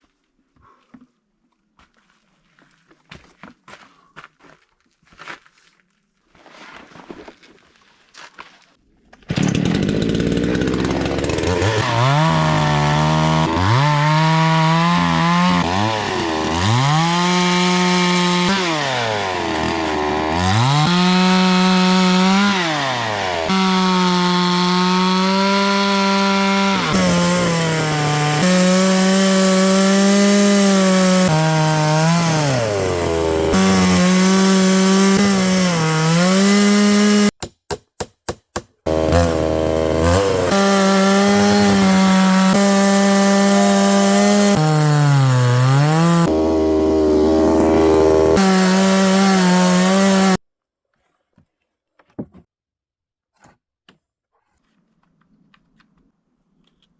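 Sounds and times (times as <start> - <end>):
chainsaw cutting wood: 9.2 - 50.4.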